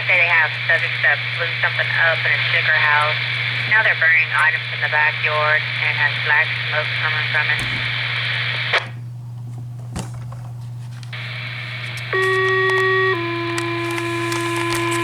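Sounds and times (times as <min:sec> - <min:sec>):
radio click: 0:00.0 - 0:09.0, 0:11.0 - 0:15.0
radio hiss: 0:00.0 - 0:09.0, 0:11.1 - 0:15.0
steady hum: 0:00.0 - 0:15.0
two-tone page tones: 0:11.2 - 0:15.0.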